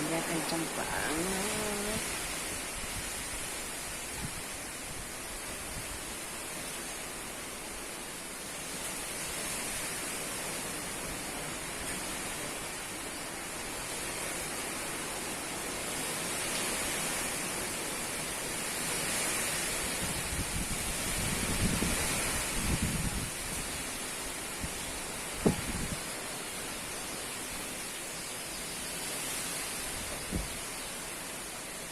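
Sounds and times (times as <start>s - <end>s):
strong wind blowing: 19.9s - 23.8s, 24.6s - 26.1s.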